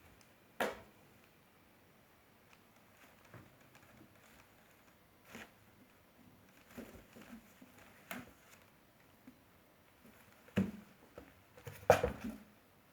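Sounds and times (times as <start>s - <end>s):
kitten scuffling and tapping: 2.6s - 8.7s, 10.1s - 12.5s.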